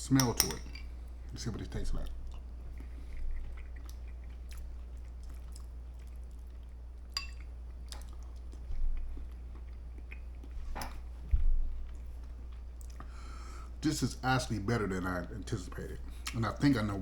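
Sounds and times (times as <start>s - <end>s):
steady low hum: 0.0s - 17.0s
person chewing: 2.0s - 10.6s, 11.8s - 13.2s.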